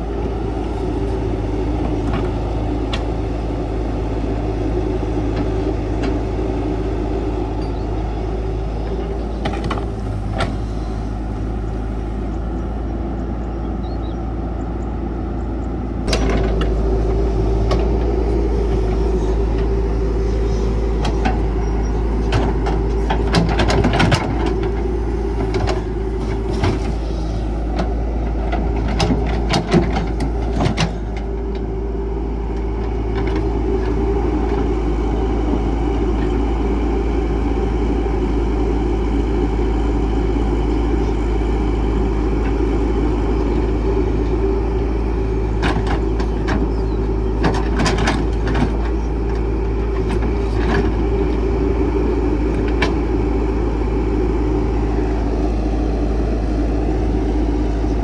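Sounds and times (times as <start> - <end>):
excavator diesel engine whining: 0.0 - 58.0.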